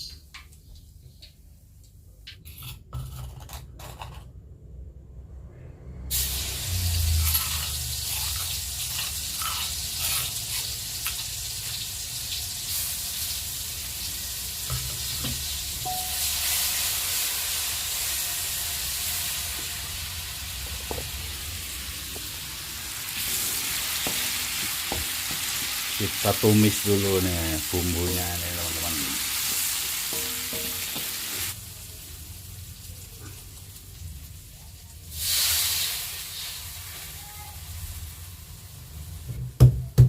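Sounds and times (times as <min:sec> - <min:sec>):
spice paste sizzling in oil: 0:06.1 - 0:39.3
stirring knocks: 0:24.0 - 0:25.8.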